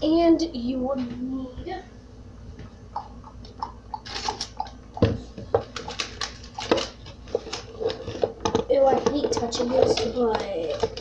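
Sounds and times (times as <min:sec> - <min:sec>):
objects clicking and knocking on table: 0:04.1 - 0:11.0.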